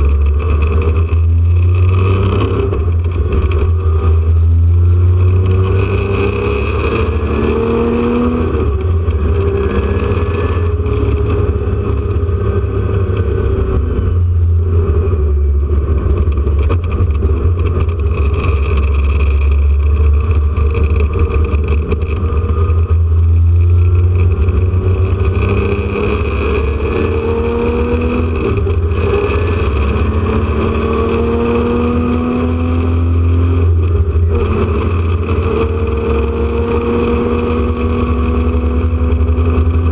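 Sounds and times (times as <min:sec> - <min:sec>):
race car engine accelerating: 0:14.9 - 0:39.9.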